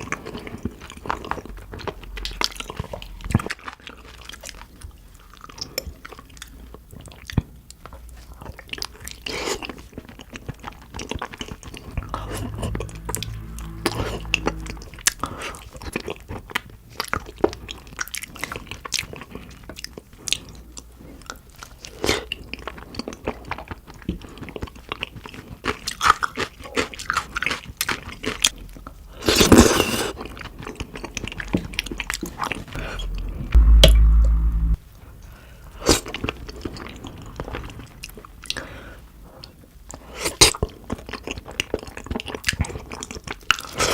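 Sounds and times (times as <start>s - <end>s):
low bump: 11.8s - 15.4s, 32.8s - 34.8s
loud noisy burst: 32.8s - 34.8s.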